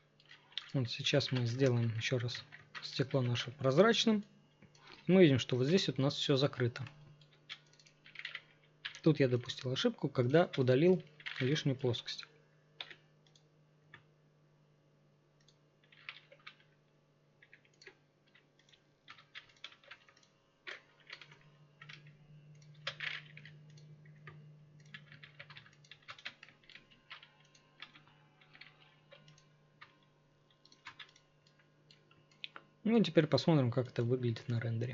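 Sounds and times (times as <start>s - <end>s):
steady low hum: 0.0s - 34.9s
keyboard and mouse clicks: 12.8s - 14.1s, 17.4s - 32.7s.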